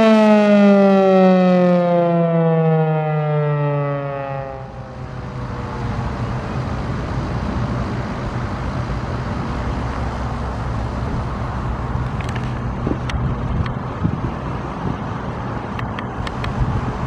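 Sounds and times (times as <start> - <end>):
road traffic and engine noise: 0.0 - 17.0
sharp clicks: 15.7 - 16.6.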